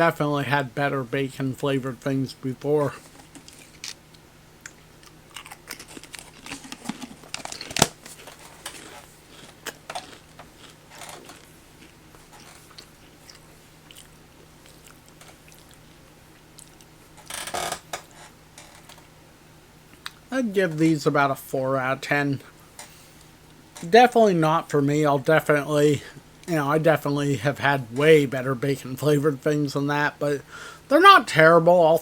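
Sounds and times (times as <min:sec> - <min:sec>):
crunching and chewing crisps: 0:03.1 - 0:17.5
packet rustle: 0:05.6 - 0:10.1.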